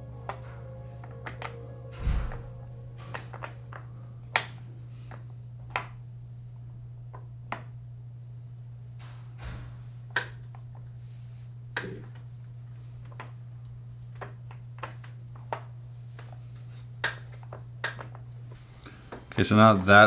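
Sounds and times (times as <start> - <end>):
low steady hum: 0.0 - 20.0
wooden puzzle pieces clicking: 0.2 - 6.0, 10.1 - 10.9, 13.0 - 13.4, 14.1 - 16.4, 17.0 - 18.2.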